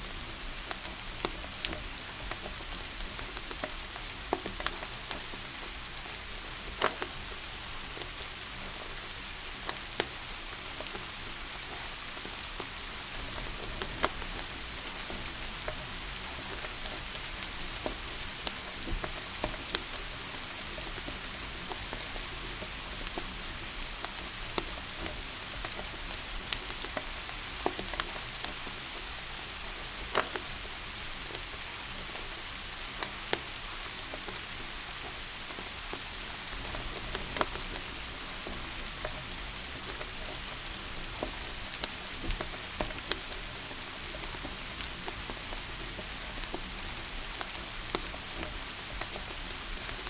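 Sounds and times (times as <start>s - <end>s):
steady rain hiss: 0.0s - 50.0s
wood fire crackling and popping: 0.4s - 50.0s.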